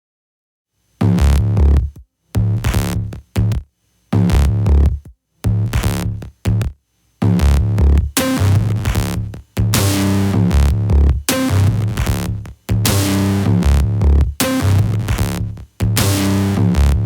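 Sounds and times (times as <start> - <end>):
electronic music with drum beat: 4.2 - 17.0.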